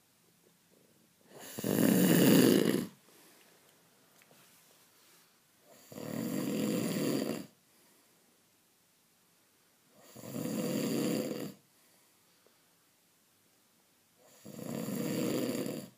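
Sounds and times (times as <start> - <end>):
rasping snores: 1.3 - 3.0, 5.7 - 7.6, 10.0 - 11.6, 14.2 - 15.9.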